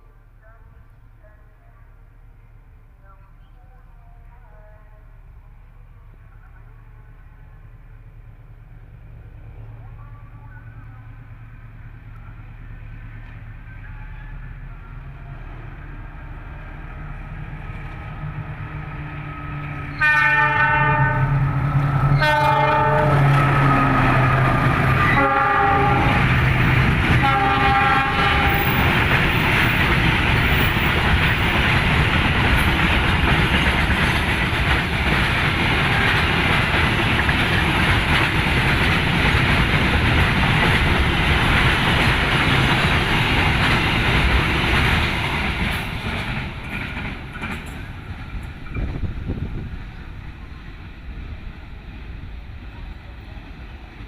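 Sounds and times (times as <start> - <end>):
locomotive horn blasts: 19.9 - 21.4, 22.1 - 26.2, 27.2 - 28.8
train wheels clattering on rails: 21.3 - 49.6.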